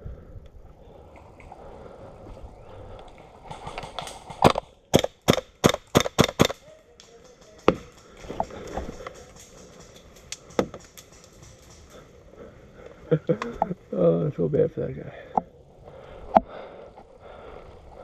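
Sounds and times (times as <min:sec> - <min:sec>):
airsoft gun shots: 0:03.6 - 0:06.6.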